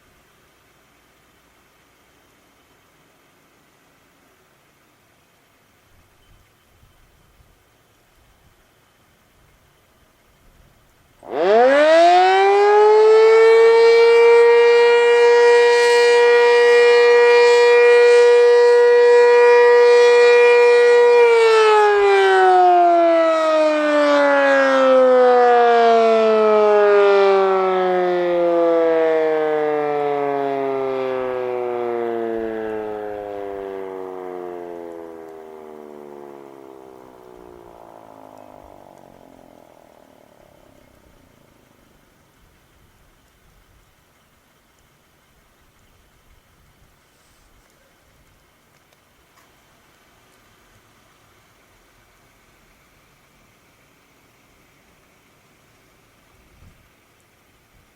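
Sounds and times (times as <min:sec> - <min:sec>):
outdoor warning siren: 0:11.2 - 0:42.7.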